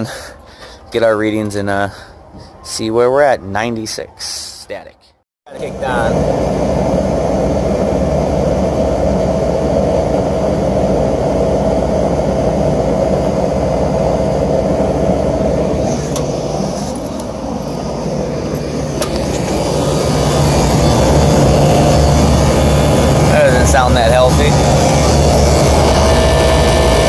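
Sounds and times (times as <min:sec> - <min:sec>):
air conditioner humming: 0:05.5 - 0:27.0
steady tone in hum: 0:05.5 - 0:27.0.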